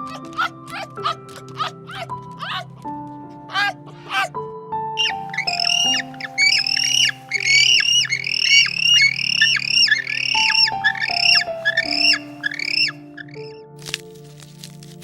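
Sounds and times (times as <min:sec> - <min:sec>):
background music with held notes: 0:00.0 - 0:15.0
bird harsh calls: 0:00.2 - 0:02.7, 0:03.5 - 0:04.3, 0:05.0 - 0:13.6.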